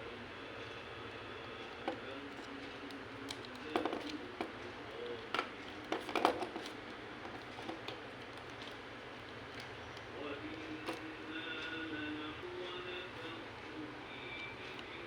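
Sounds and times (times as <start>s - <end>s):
small tools clicking and tapping: 1.7s - 9.8s.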